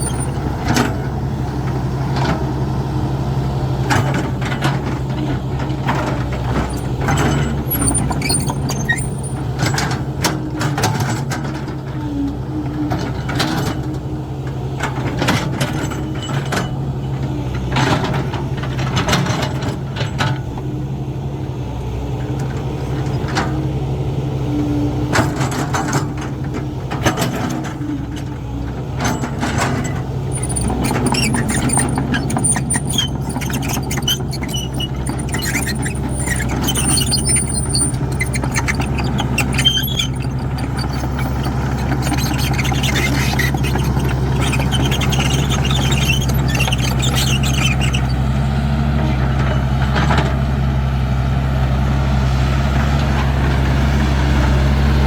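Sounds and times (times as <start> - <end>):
excavator diesel engine running: 0.0 - 55.0
thin high squeal: 6.7 - 9.4, 30.4 - 48.2.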